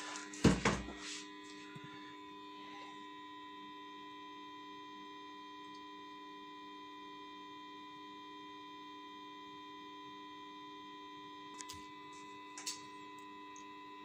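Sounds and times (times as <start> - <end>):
thump: 0.4 - 0.9.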